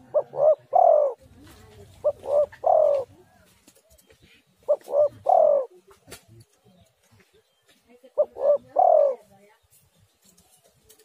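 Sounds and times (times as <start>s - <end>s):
dove cooing: 0.0s - 6.2s, 8.1s - 9.3s.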